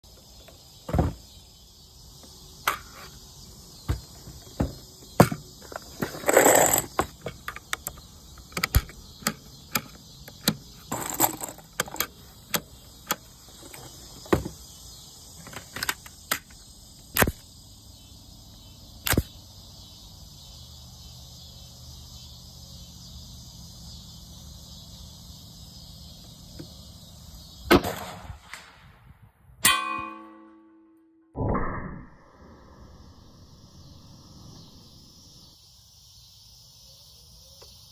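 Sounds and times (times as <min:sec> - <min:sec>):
sharp clicks and knocks: 0:03.9 - 0:14.6
high-pitched hiss: 0:32.3 - 0:37.9.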